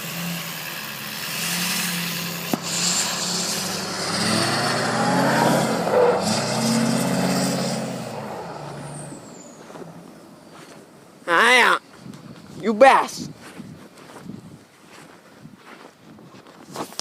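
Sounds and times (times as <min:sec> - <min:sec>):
vehicle engine revving: 0:00.0 - 0:10.2.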